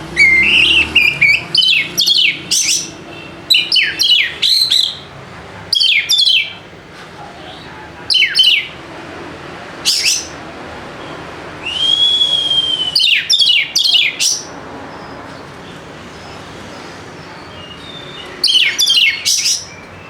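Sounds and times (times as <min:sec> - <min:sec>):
bird singing whistled notes: 0:00.1 - 0:05.1, 0:05.8 - 0:06.6, 0:08.1 - 0:08.7, 0:11.6 - 0:15.2, 0:17.2 - 0:20.0.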